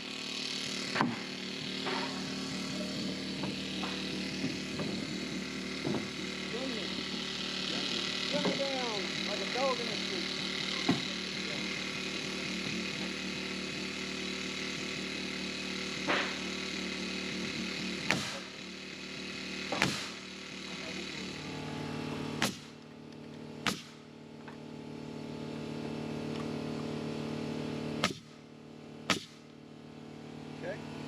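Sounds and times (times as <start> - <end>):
small engine running: 0.0 - 31.0
nail gun firing: 18.0 - 18.6, 19.6 - 20.3, 22.4 - 22.9, 23.6 - 24.1, 28.0 - 29.6.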